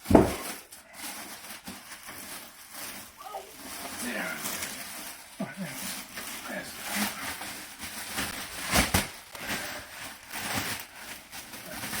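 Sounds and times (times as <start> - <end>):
packaging rustling and crackling: 0.0 - 12.0
dull knocks: 0.1 - 0.5.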